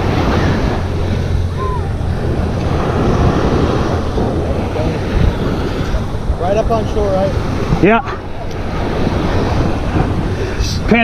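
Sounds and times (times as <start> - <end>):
ocean surf washing onto beach: 0.0 - 11.0
wind buffeting microphone: 0.0 - 11.0.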